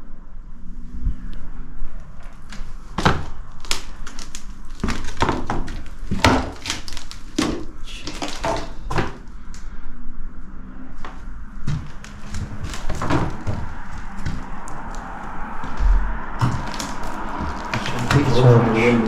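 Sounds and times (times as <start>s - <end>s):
footsteps on hard floor: 11.0s - 18.8s.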